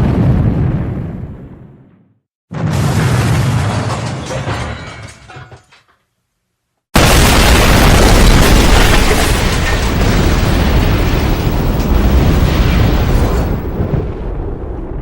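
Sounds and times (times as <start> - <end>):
explosion rumbling with heavy bass: 0.0 - 3.9, 7.0 - 15.0.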